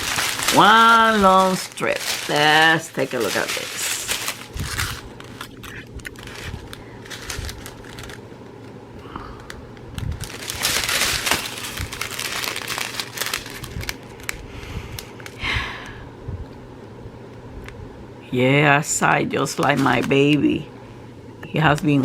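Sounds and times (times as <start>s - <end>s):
plastic packaging crinkling: 0.0s - 15.4s, 19.4s - 20.6s.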